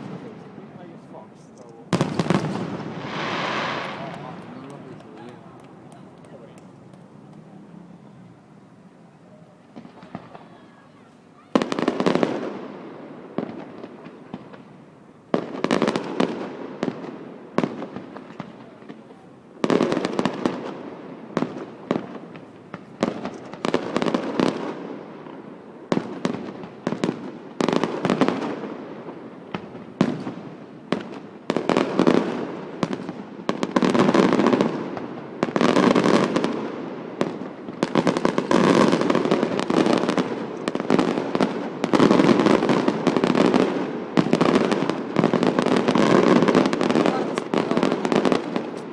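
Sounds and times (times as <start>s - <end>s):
fireworks shells bursting: 1.6s - 7.7s.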